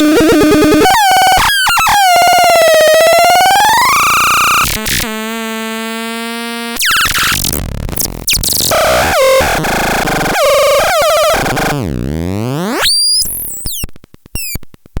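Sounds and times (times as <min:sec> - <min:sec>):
held buzzy synthesizer tone: 0:06.8 - 0:12.0
glitchy synthesizer notes: 0:06.8 - 0:14.7.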